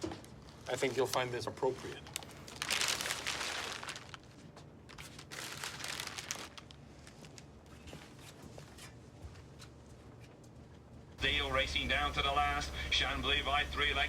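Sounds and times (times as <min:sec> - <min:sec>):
wrapping crinkling: 0:00.4 - 0:09.0.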